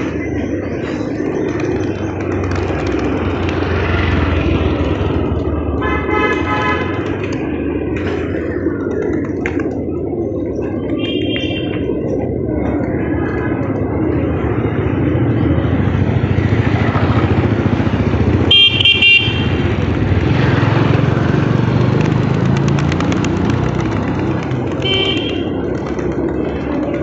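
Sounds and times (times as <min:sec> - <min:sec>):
street traffic: 0:00.0 - 0:27.0
vehicle horn honking: 0:18.5 - 0:19.6.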